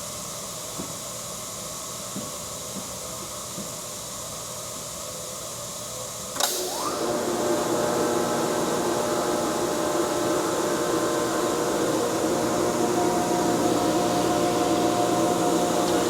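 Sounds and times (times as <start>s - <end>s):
air compressor humming: 6.4s - 16.0s.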